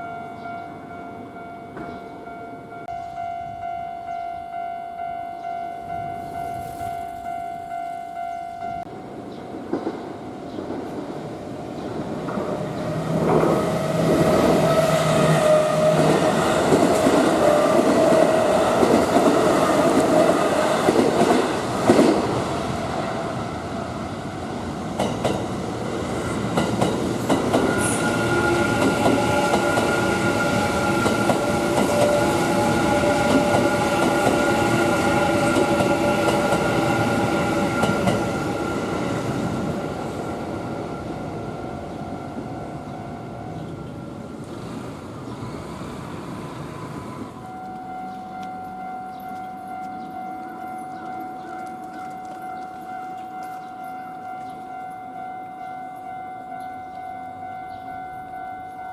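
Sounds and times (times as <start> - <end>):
steady train whine: 0.0 - 58.9
train wheels clattering over joints: 24.9 - 38.6.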